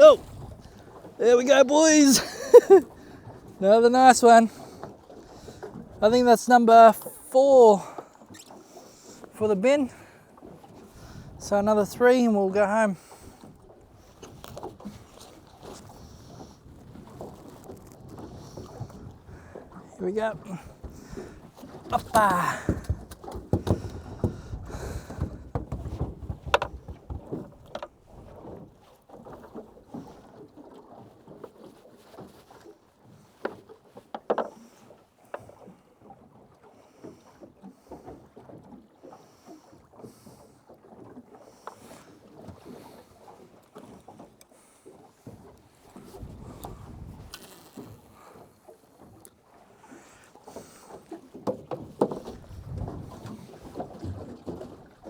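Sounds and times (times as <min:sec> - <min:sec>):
water slapping boat hull: 0:00.0 - 0:55.0
knocks and clunks: 0:21.9 - 0:28.0.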